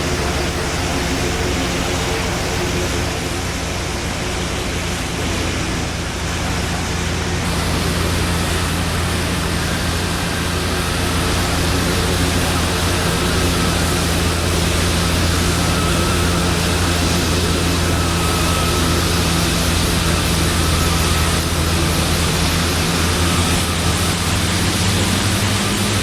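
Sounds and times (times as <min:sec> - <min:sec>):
heavy rain: 0:00.0 - 0:26.0
steady low hum: 0:00.0 - 0:26.0.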